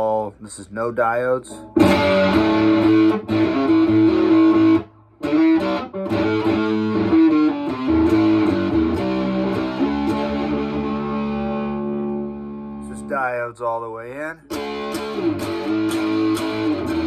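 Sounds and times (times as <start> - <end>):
fuzz electric guitar riff: 1.6 - 13.4, 14.5 - 17.0.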